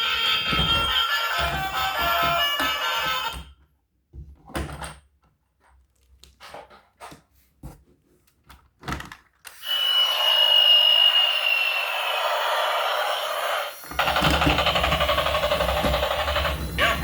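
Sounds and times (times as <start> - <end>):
toy electric motor whirring: 0.0 - 3.4, 9.5 - 17.0
plastic toys and packaging handled: 0.0 - 9.8.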